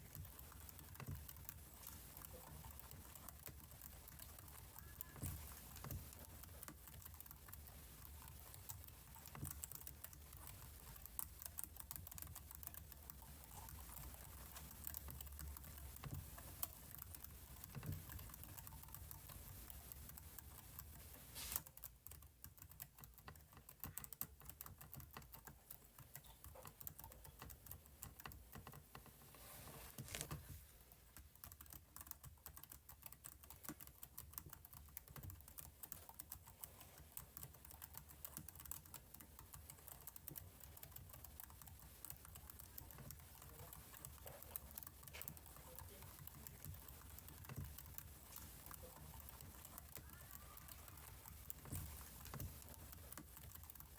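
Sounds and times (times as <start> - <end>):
keyboard typing: 31.2 - 53.9.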